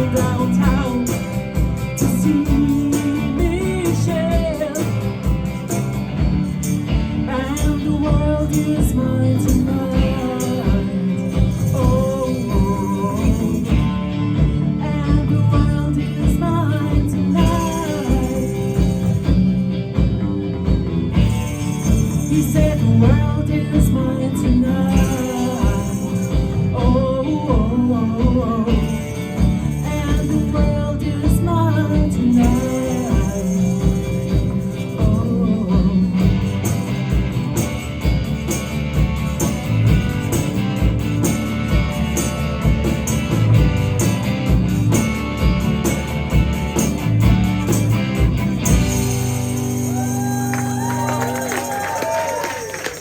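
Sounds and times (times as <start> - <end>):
person singing: 0.0 - 5.2, 7.2 - 19.1, 22.1 - 36.7
bass: 0.0 - 53.0
drums keeping a steady beat: 0.0 - 53.0
strummed guitars: 0.0 - 53.0
tambourine jingling: 0.0 - 53.0.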